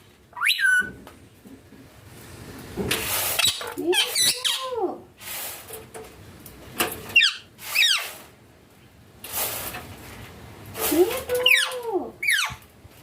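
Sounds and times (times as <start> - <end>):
parakeet squawks: 0.4 - 0.9, 7.2 - 8.2, 11.4 - 12.6
hissy rustles: 1.2 - 3.8, 5.1 - 8.4, 9.2 - 11.4.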